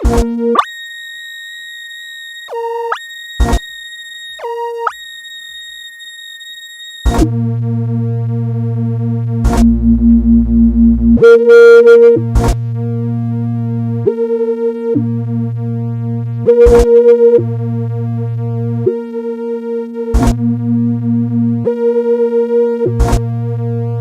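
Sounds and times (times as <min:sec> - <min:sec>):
sharp clicks: 0:00.6 - 0:07.3
pulsing deep bass tone: 0:07.3 - 0:11.5
low synthesized hum: 0:07.3 - 0:14.1.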